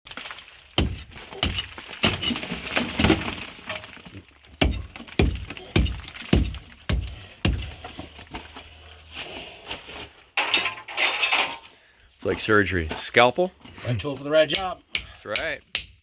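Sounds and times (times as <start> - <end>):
hand tool striking earthen wall: 0.8 - 3.4, 4.6 - 8.0, 14.4 - 16.0.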